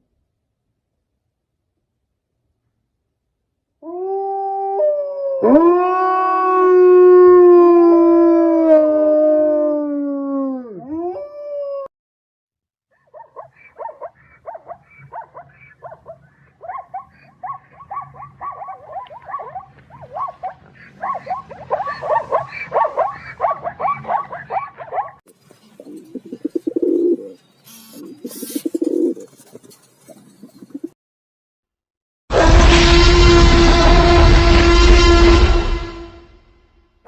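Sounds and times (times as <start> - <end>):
wolf howling: 3.8 - 11.9
short yipping calls: 26.7 - 30.8.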